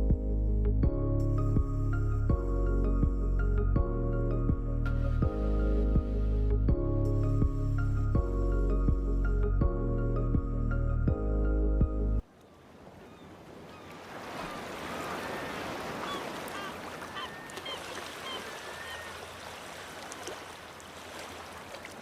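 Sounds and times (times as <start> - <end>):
short bird calls: 13.0 - 19.4.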